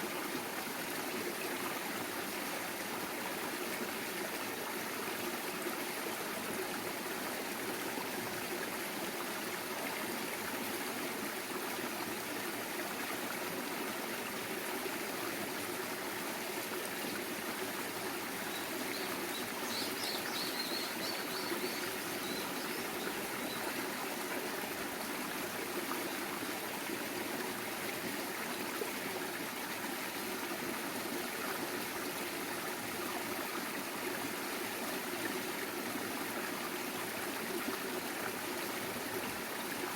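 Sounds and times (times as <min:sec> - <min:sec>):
stream flowing over rocks: 0:00.0 - 0:39.9
bird chirping: 0:18.5 - 0:23.6.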